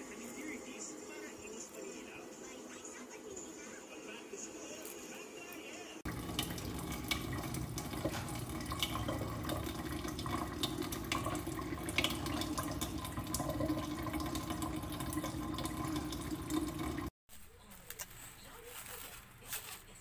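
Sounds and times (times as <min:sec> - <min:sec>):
tap water splashing into sink: 0:06.1 - 0:17.1
water drips and splashes: 0:06.1 - 0:17.1.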